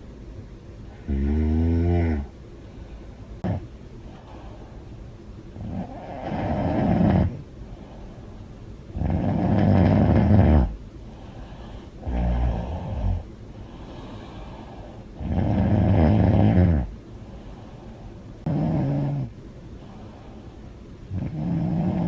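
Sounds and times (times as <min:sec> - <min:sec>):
woman snoring loudly: 0:01.0 - 0:02.3, 0:05.6 - 0:07.4, 0:09.0 - 0:10.8, 0:15.2 - 0:16.9, 0:18.5 - 0:19.3, 0:21.1 - 0:22.0.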